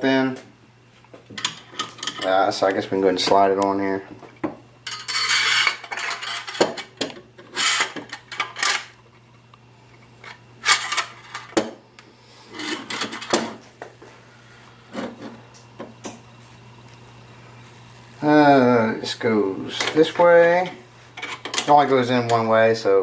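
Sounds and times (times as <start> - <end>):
metal scraping and sliding: 4.9 - 6.6, 7.5 - 8.8, 12.5 - 13.3.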